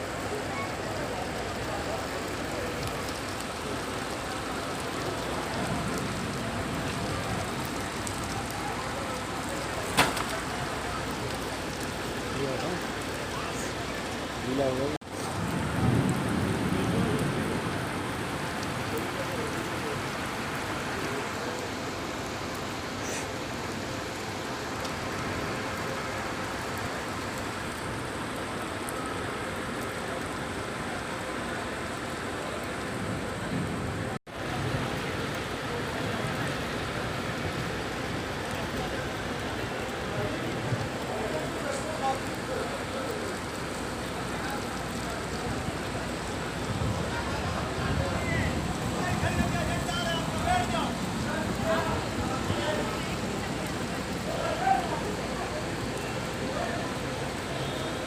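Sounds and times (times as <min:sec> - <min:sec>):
heavy rain hitting the ground: 0:00.0 - 0:58.0
faint drip ticks: 0:00.5 - 0:14.1, 0:34.9 - 0:58.0.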